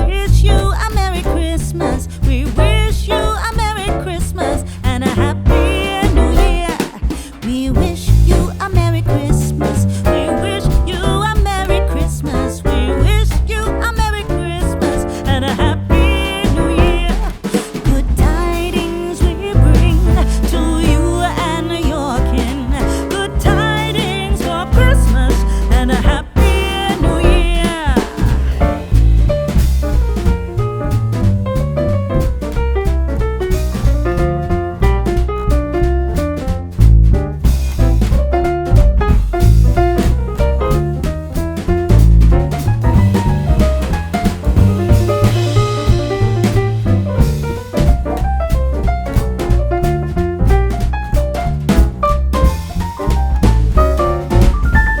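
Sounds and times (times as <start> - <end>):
upbeat song with vocals: 0.0 - 29.1.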